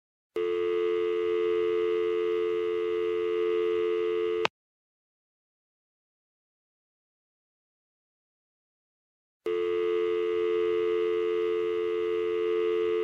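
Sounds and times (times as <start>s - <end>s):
telephone dial tone: 0.4s - 4.5s, 9.5s - 13.0s.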